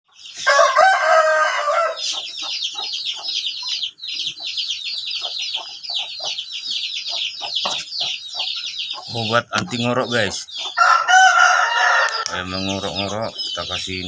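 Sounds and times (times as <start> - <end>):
chicks peeping: 0.1 - 14.0
rooster crowing: 0.4 - 2.1, 10.8 - 12.4
low clucks: 7.1 - 10.5.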